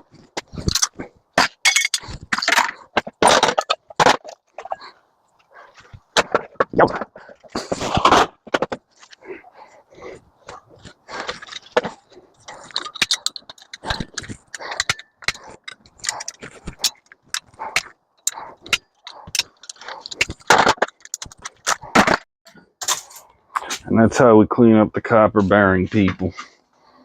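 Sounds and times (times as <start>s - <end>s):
metallic tool clinks and scrapes: 1.6s - 3.8s, 11.2s - 21.6s, 22.5s - 23.3s.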